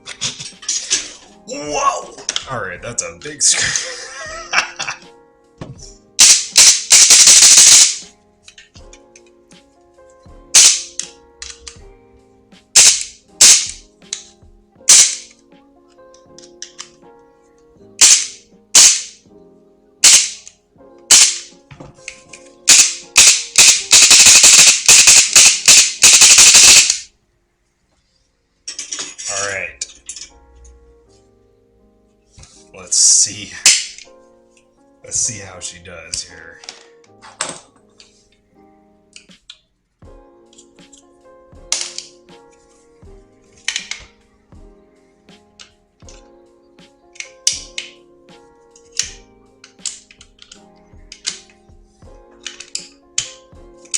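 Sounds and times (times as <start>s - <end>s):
airsoft rifle firing bursts: 6.2s - 8.0s, 12.8s - 13.8s, 14.9s - 15.2s, 18.0s - 19.1s, 20.0s - 20.4s, 21.1s - 21.4s, 22.7s - 27.0s.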